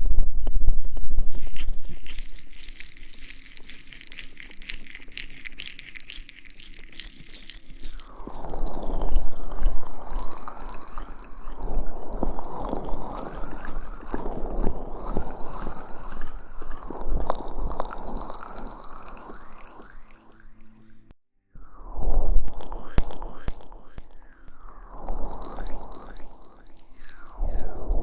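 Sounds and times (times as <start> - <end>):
gel squelching on microphone: 0.9 - 21.1.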